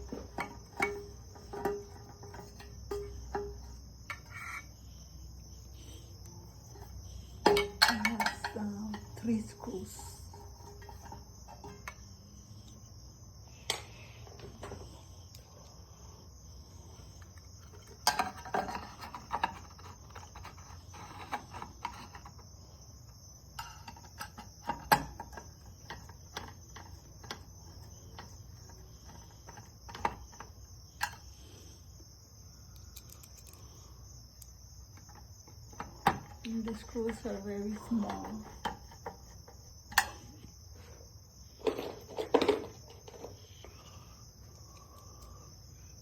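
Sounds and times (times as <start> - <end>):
crickets chirping: 0.0 - 46.0
small metallic screw clicks: 32.8 - 33.6.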